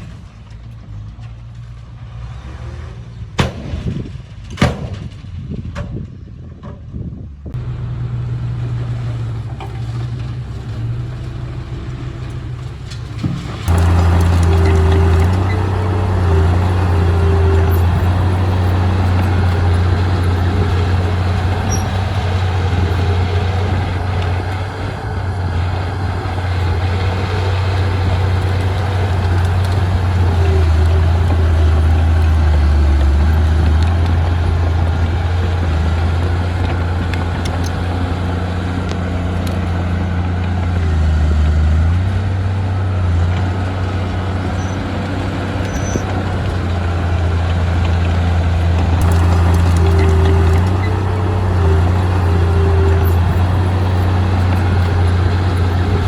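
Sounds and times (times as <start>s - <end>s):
bulldozer diesel engine droning: 7.5s - 56.0s
mechanical clatter: 45.6s - 56.0s.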